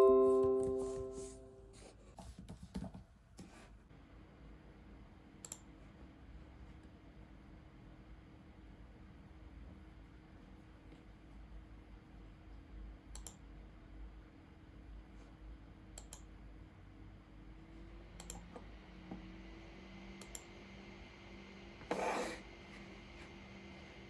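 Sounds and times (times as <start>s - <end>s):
computer clicks: 5.4s - 5.6s, 13.1s - 13.4s, 16.0s - 16.3s, 18.2s - 18.4s.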